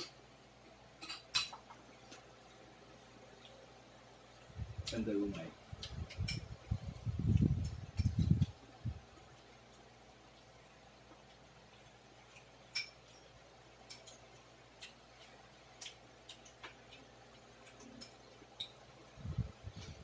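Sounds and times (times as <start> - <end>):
cutlery clinking on plates: 1.0 - 1.7, 12.7 - 15.0.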